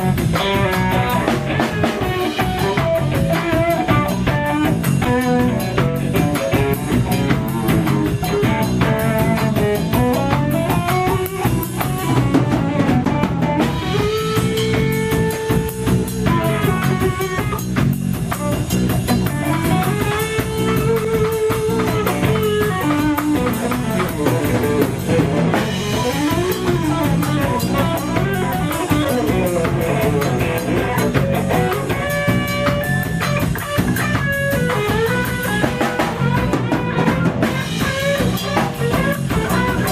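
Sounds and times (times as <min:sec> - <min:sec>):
drum kit beat: 0:00.0 - 0:39.9
electric guitar melody: 0:00.0 - 0:39.9.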